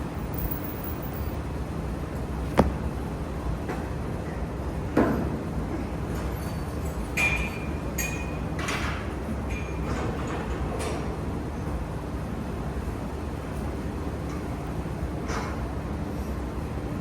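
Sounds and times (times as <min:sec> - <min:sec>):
light metallic clinks: 0:00.2 - 0:01.4
dull thump: 0:02.4 - 0:03.0.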